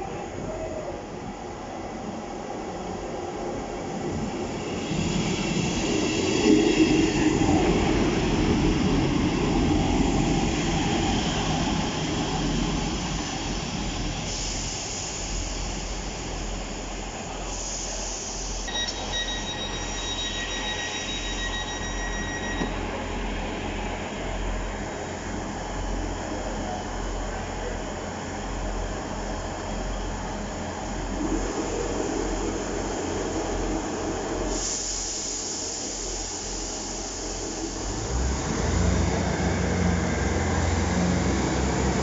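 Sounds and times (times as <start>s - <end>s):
train rumbling: 0.0s - 42.0s
high-pitched tone: 18.7s - 22.8s.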